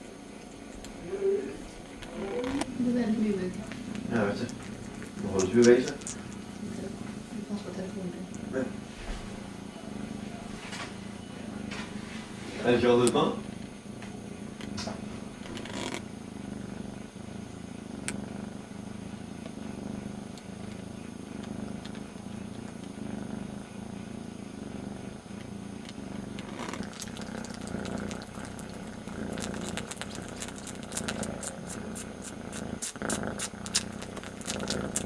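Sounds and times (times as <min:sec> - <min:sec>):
kitten purring: 0:00.0 - 0:35.0
wet sucking clicks: 0:01.6 - 0:02.8, 0:03.5 - 0:06.8, 0:25.4 - 0:35.0.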